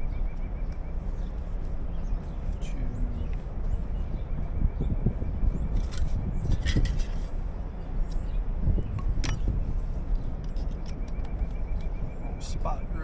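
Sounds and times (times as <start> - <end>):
steady low rumble: 0.0 - 13.0
light clinks and taps: 9.0 - 9.5.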